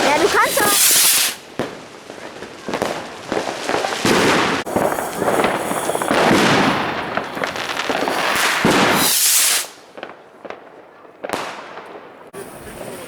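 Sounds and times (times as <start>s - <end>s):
hissing crackle: 0.0s - 10.0s
firecrackers crackling and banging: 0.0s - 13.0s.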